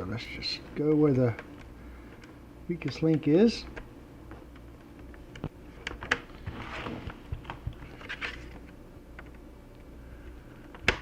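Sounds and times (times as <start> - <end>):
plastic scraping on plastic: 6.0 - 8.7.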